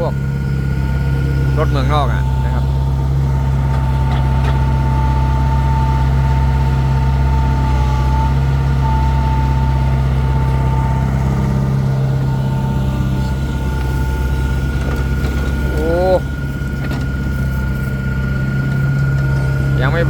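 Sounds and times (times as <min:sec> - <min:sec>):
diesel engine running: 0:00.0 - 0:20.0
thin steady whine: 0:19.3 - 0:20.0.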